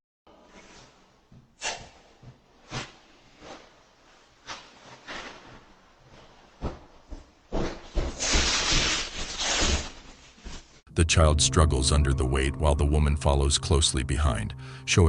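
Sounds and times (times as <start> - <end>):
footsteps on stairs: 6.6 - 8.2.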